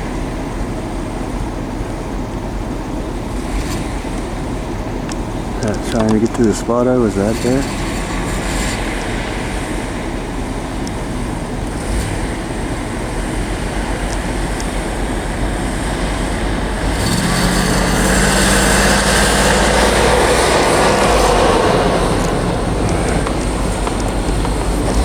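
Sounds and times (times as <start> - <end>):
truck engine revving: 0.0 - 25.0.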